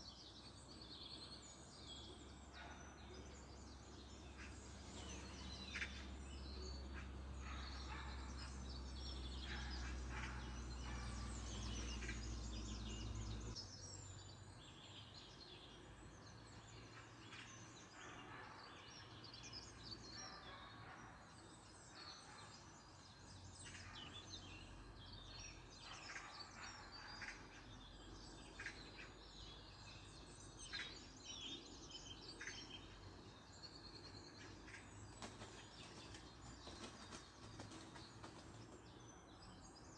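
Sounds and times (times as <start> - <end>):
songbirds chirping and singing: 0.0 - 39.9.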